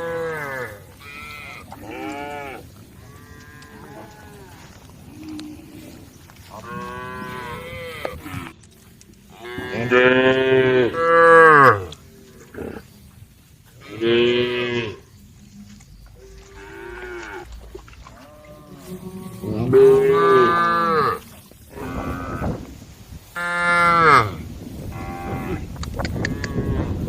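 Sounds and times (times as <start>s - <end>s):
cattle mooing: 0.0s - 5.9s, 6.5s - 8.5s, 9.3s - 12.8s, 16.2s - 22.6s.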